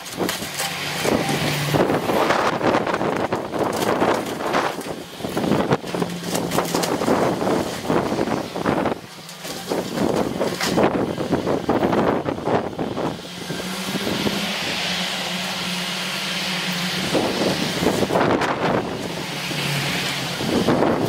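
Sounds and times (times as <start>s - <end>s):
rubble crashing and scraping: 0.0s - 12.6s
excavator diesel engine running: 0.0s - 21.0s.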